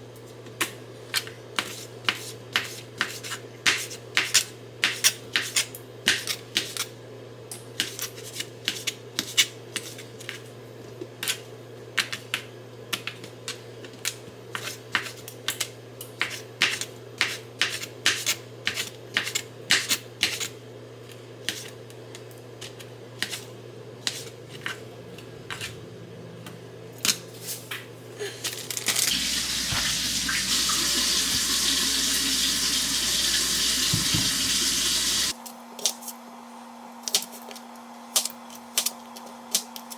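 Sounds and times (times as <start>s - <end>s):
tap water running into sink: 29.1s - 35.3s.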